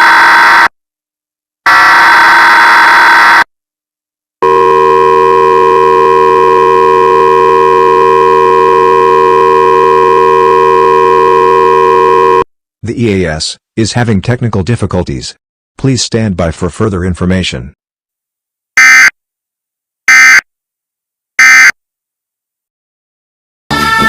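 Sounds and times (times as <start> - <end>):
harsh loud buzzer blast: 0.0 - 0.7, 1.7 - 3.5, 4.4 - 12.4.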